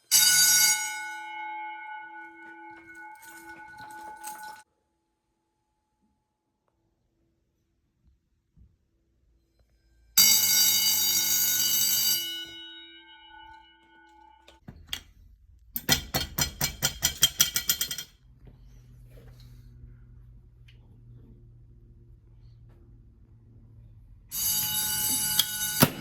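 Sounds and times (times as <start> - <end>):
fire alarm bell ringing: 0.0 - 4.6, 10.2 - 14.6, 24.3 - 26.0.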